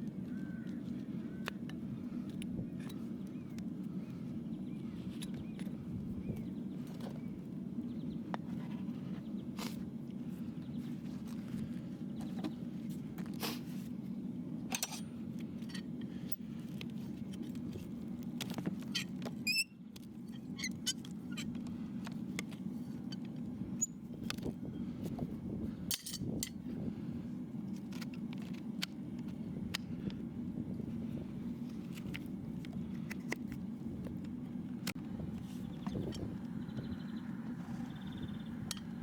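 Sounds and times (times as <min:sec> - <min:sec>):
hoof-trimming tools scraping: 0:00.8 - 0:05.8, 0:14.7 - 0:25.2.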